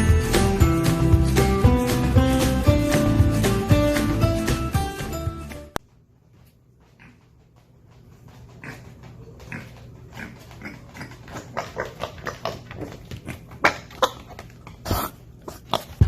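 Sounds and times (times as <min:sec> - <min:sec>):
pig grunting: 0:08.6 - 0:15.8.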